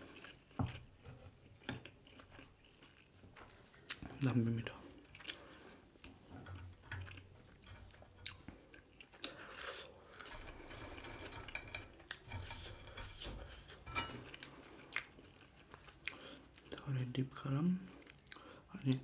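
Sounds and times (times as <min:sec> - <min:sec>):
person chewing with wet smacks: 0:00.0 - 0:10.3, 0:14.2 - 0:16.9, 0:17.9 - 0:19.0.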